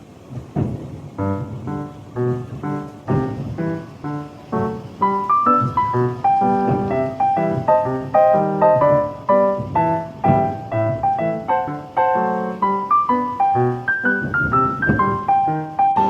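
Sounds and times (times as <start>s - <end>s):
piano music: 0.0s - 16.0s.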